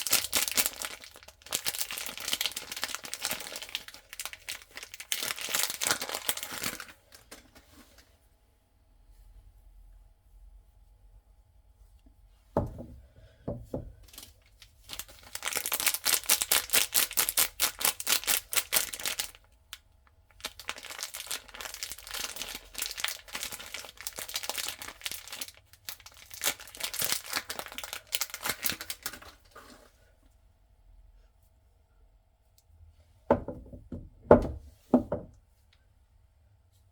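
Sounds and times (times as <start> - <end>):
wrapper crinkling: 0.0 - 7.6, 14.0 - 29.7
soft thump: 12.6 - 13.8.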